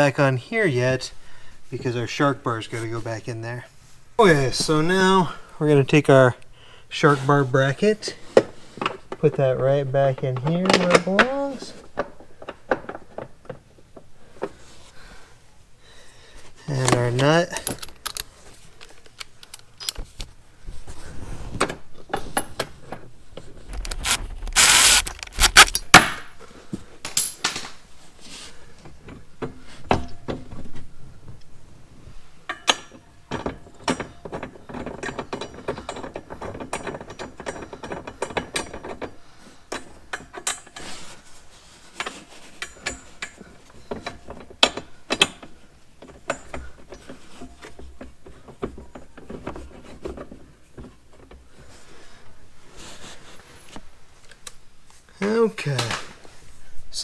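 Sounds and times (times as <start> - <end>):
loud burst of noise: 23.7 - 25.8
metal tools clicking and rattling: 23.7 - 25.8
ratchet clicks: 23.7 - 25.8.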